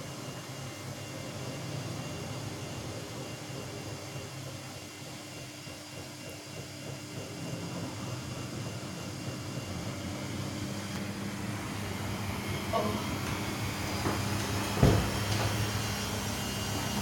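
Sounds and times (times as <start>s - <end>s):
washing machine whirring hum: 0.0s - 17.0s.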